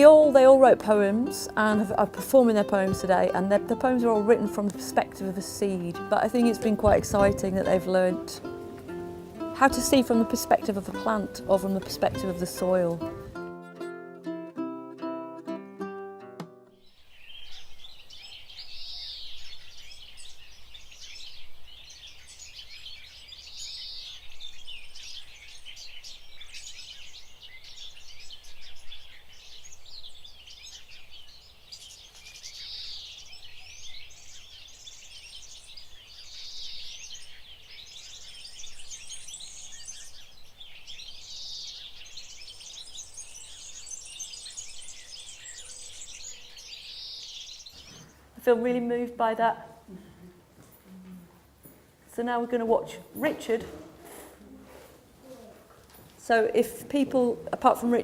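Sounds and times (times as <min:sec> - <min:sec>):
loud bird song phrase: 0:00.0 - 0:13.4, 0:16.8 - 0:49.9
small birds twittering: 0:16.8 - 0:49.9.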